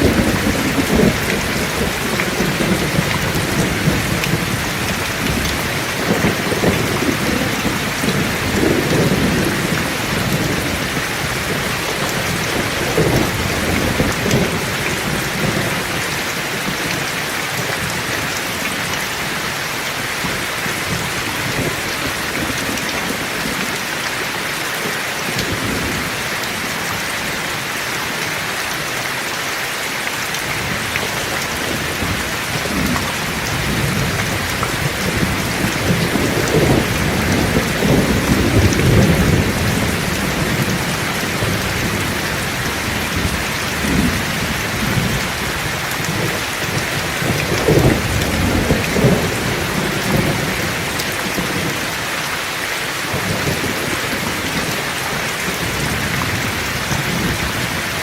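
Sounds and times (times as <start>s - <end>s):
low rolling thunder: 0.0s - 16.1s, 30.6s - 51.9s
heavy rain falling: 0.0s - 58.0s.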